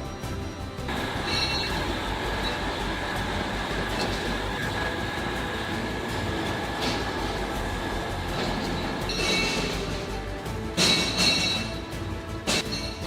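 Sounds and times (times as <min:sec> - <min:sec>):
industrial machinery noise: 0:00.3 - 0:13.0
faint high whine: 0:00.9 - 0:09.6.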